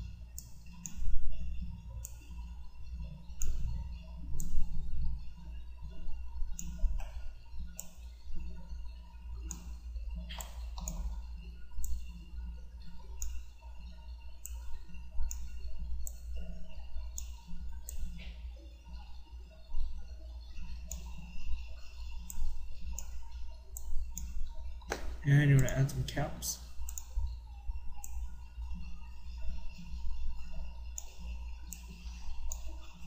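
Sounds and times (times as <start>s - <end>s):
steady low hum: 0.0s - 33.0s
computer mouse clicking: 0.4s - 1.1s, 2.0s - 3.8s, 4.4s - 4.8s, 5.9s - 8.1s, 9.4s - 12.2s, 13.2s - 13.7s, 14.4s - 19.1s, 20.5s - 26.2s, 26.8s - 27.4s, 28.0s - 33.0s.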